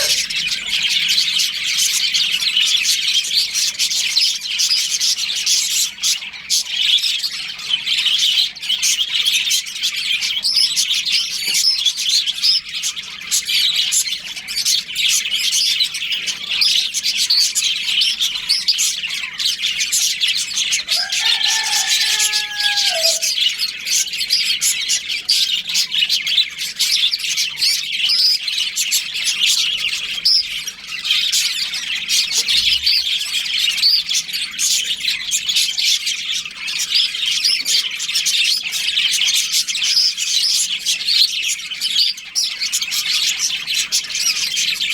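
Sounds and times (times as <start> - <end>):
budgerigars chirping: 0.0 - 44.9
lower held bird call: 20.9 - 23.4.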